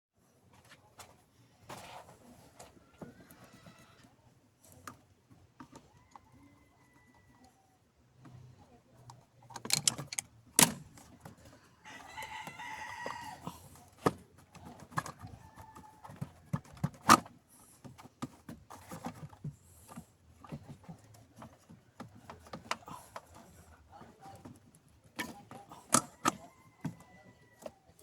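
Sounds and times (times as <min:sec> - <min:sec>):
clicks and knocks of hand work: 0:09.5 - 0:11.2.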